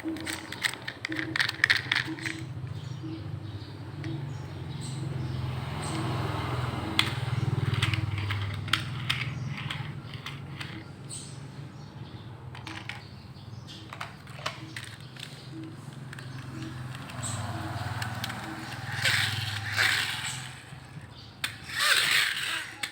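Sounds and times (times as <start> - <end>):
toy parts clicking and knocking: 0.0 - 2.9, 7.0 - 11.0, 12.5 - 22.9.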